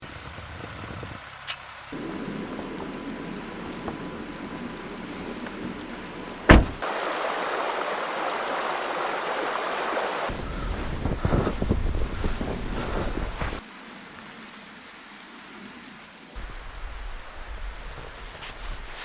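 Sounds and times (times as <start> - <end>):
snowstorm rushing noise: 1.9 - 14.5, 16.4 - 19.0
sharp thump: 6.5 - 6.8.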